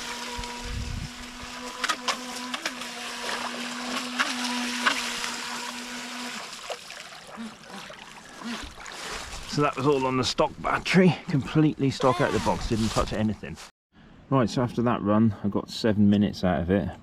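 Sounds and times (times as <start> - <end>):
electric motor whining: 0.0 - 6.6
water splashes or knocks: 1.7 - 9.5.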